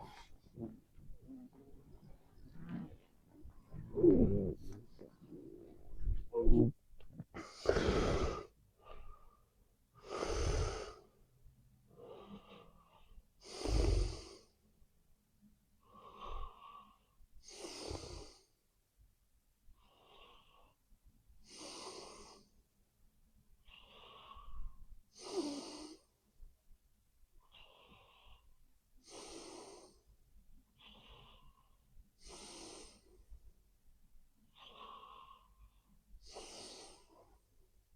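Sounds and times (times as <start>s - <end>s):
person snoring: 0.0s - 8.5s
soft breath: 0.0s - 11.1s.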